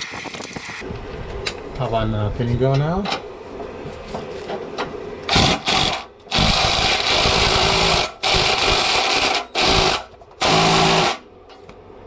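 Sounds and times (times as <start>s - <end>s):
power tool on fastener: 5.3s - 11.2s.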